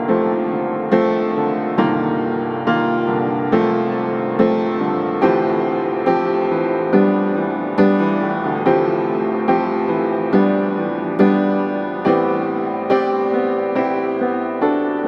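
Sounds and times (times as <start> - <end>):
slow piano chords: 0.0 - 15.0.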